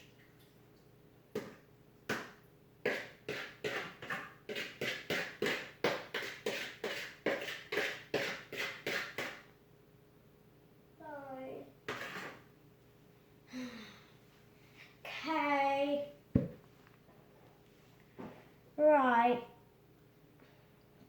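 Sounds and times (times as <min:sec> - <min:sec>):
sharp taps or slaps: 0:01.4 - 0:09.4.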